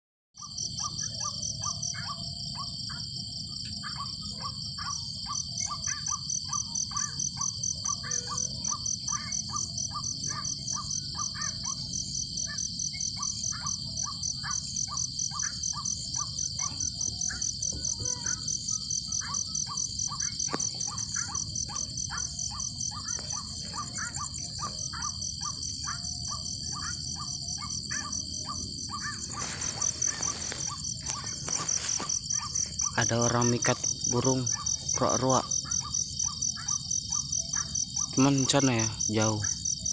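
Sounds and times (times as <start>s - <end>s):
night insects buzzing: 0.4s - 39.9s
distant waterhen calls: 19.1s - 39.5s.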